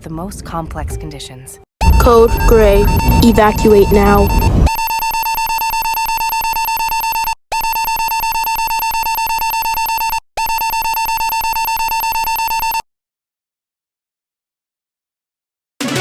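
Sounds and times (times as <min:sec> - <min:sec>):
pulsing evacuation alarm: 0:01.8 - 0:12.8.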